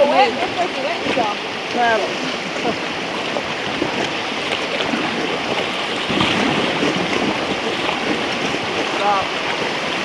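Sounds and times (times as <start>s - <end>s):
river whitewater rushing: 0.0s - 10.0s.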